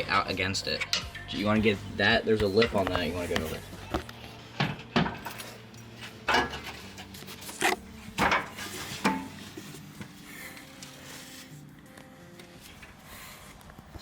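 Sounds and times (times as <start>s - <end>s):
metal clanks and knocks: 4.6s - 7.1s, 8.1s - 9.5s.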